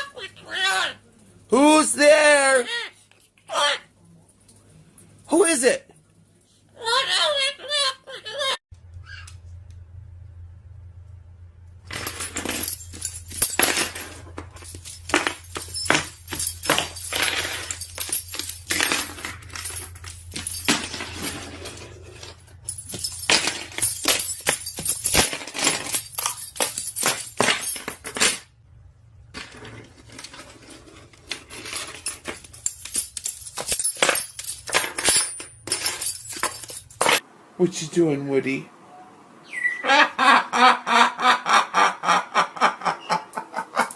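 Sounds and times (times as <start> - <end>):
small hard objects clinking: 11.9 - 28.4, 30.0 - 37.2.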